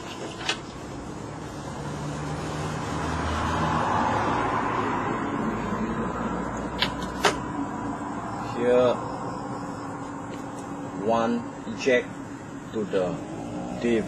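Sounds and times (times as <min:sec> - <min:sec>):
vehicle rushing past: 0:01.0 - 0:11.1, 0:13.0 - 0:14.0.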